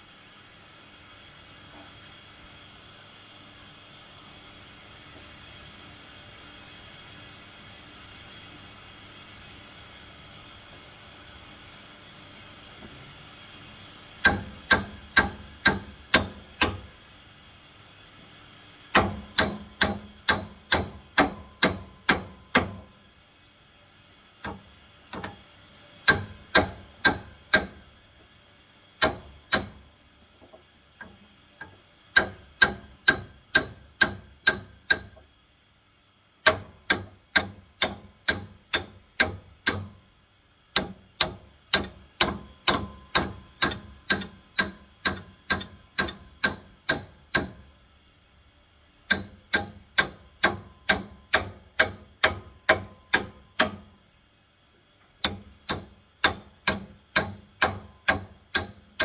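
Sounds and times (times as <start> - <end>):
faint steady hiss: 0.0 - 59.0
hammer striking steel: 14.2 - 16.9, 19.0 - 23.0, 26.1 - 27.9, 29.0 - 29.9, 31.0 - 35.2, 36.5 - 40.0, 40.8 - 47.7, 49.1 - 53.9, 55.2 - 59.0.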